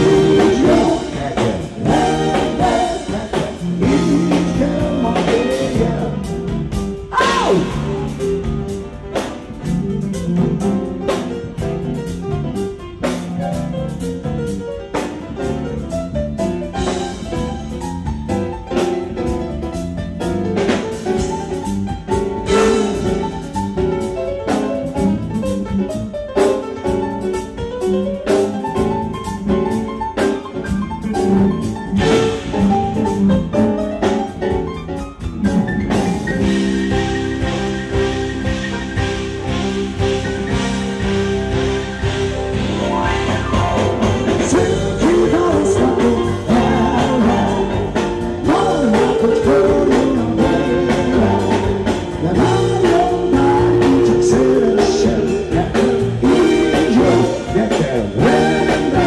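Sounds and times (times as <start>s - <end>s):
drum kit fast beat: 0.0s - 59.0s
rock band instrumental: 0.0s - 59.0s.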